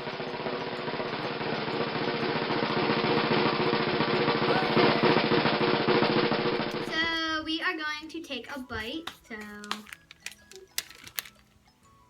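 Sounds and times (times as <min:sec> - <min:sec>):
drum roll: 0:00.0 - 0:07.2.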